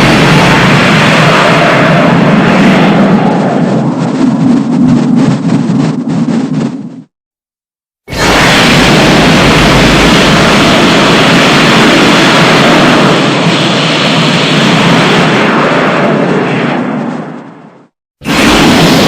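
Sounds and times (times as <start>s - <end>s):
monster rushing blast: 0.0s - 5.1s, 8.1s - 17.0s, 18.2s - 19.0s.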